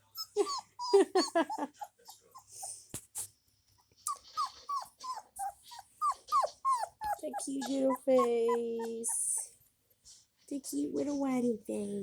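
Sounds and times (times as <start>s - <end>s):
puppy whining: 0.0s - 2.8s, 4.0s - 9.8s.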